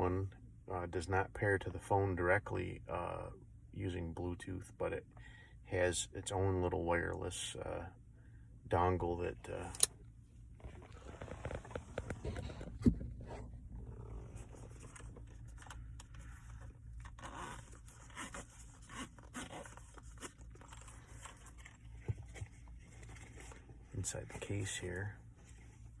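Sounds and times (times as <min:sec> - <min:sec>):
carrying case rustling and scraping: 0:10.6 - 0:23.8.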